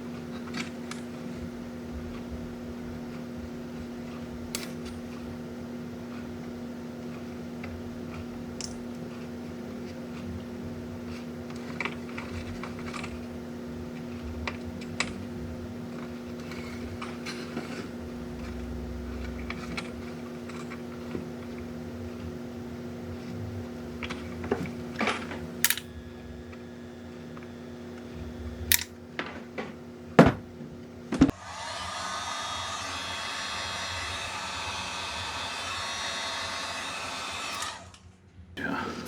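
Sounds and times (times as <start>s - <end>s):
steady low hum: 0.0s - 39.0s
small parts clicking: 24.0s - 25.9s, 28.7s - 28.9s.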